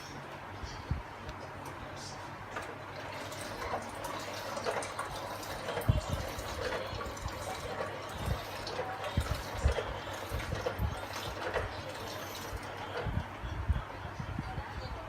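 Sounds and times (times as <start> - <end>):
steady low hum: 0.0 - 15.0
water running or bubbling: 2.8 - 13.1.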